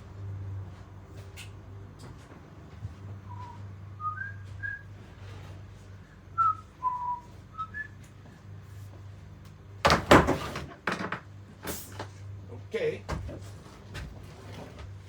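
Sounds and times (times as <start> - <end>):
person whistling: 3.3 - 4.9, 6.4 - 8.0.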